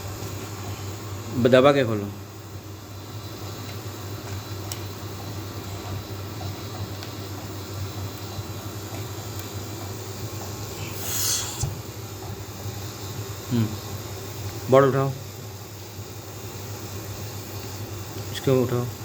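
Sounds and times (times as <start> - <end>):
test equipment humming: 9.4 - 12.2
hissing air burst: 10.7 - 11.9.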